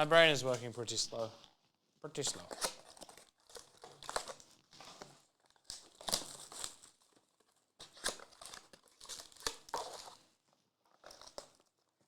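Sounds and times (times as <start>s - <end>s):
plastic wrapping crinkling and tearing: 2.2s - 11.8s.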